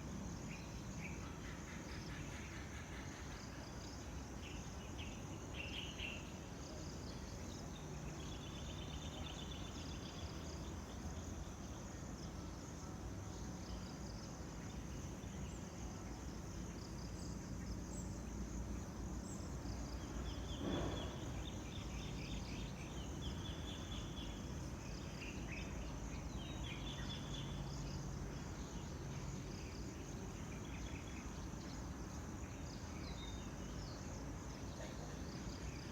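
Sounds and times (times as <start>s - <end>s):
insect chorus trilling: 0.0s - 35.9s.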